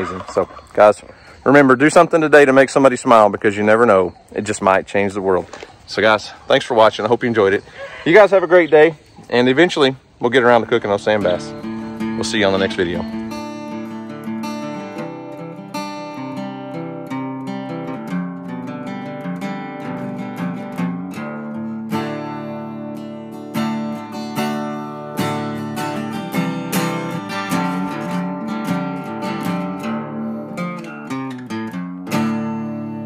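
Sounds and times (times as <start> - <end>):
acoustic guitar playing: 10.3 - 33.0.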